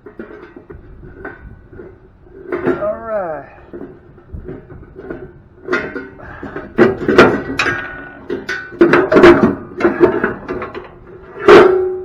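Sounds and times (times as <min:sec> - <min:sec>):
hand tools clanking on steel: 0:00.0 - 0:12.0.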